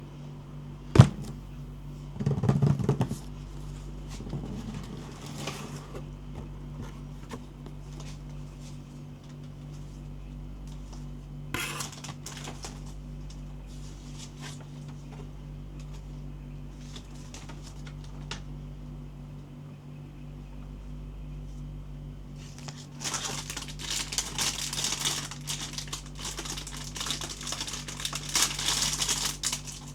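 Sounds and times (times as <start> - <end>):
steady low hum: 0.0 - 29.9
packaging rustle: 11.6 - 13.0, 22.4 - 29.9.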